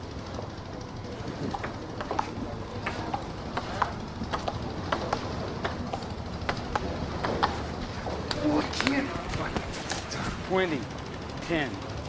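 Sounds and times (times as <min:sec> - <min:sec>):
ping-pong ball clicking: 0:01.1 - 0:10.0.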